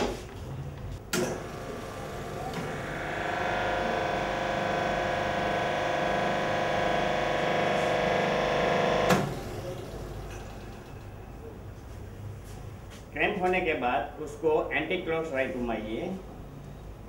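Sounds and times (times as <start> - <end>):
hydraulic pump motor whining: 1.1 - 11.6.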